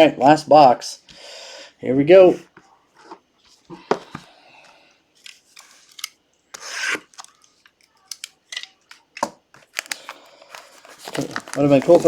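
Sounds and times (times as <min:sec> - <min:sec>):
plastic wrap and cardboard rustling: 0:09.5 - 0:12.0.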